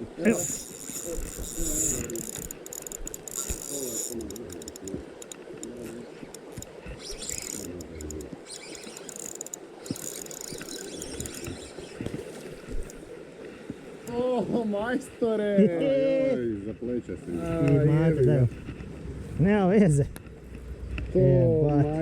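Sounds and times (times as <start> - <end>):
fishing reel clicking whirr: 0.3 - 12.0.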